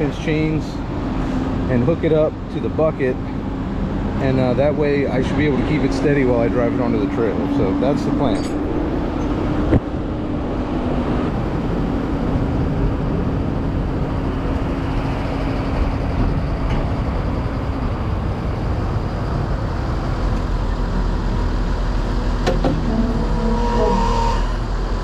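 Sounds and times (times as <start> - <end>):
diesel engine idling: 11.3 - 25.0.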